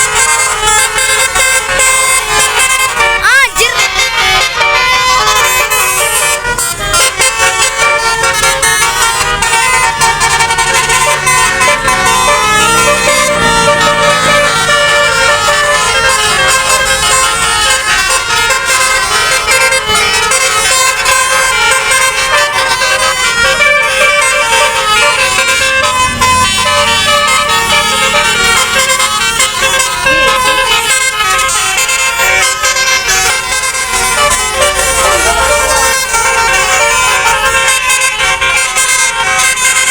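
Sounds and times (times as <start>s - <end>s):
multi-tone musical bus horn: 0.0s - 39.9s.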